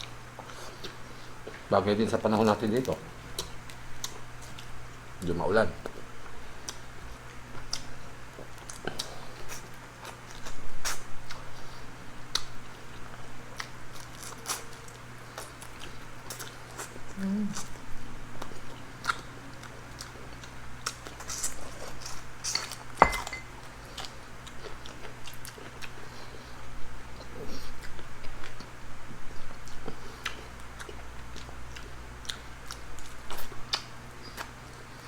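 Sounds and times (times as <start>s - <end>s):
chewing: 3.3s - 4.7s, 5.8s - 11.7s, 12.3s - 17.8s, 18.4s - 22.8s, 23.8s - 26.5s, 29.3s - 35.0s
cutlery clinking on plates: 22.5s - 23.6s.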